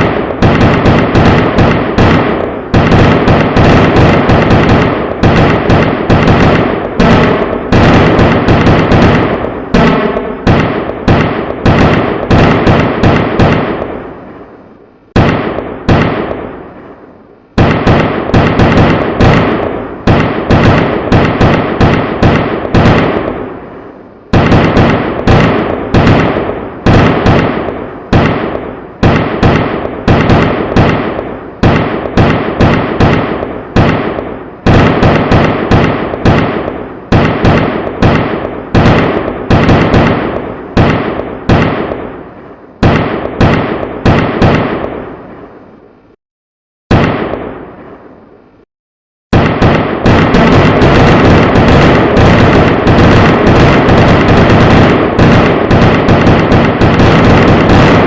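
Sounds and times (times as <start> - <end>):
firecrackers exploding: 0.0 - 45.8, 46.9 - 48.2, 49.3 - 58.0.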